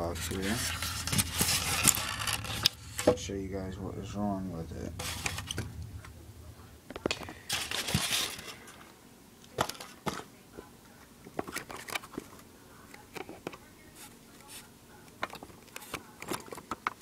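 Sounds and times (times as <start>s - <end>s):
packaging crinkling and rustling: 0.0s - 3.1s, 7.0s - 8.9s.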